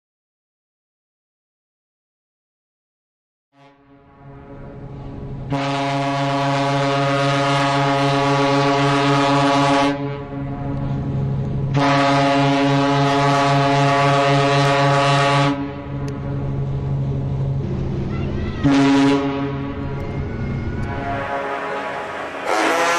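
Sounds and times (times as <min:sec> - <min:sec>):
ship horn blasts: 0:03.6 - 0:10.8, 0:11.7 - 0:16.4, 0:18.6 - 0:22.9.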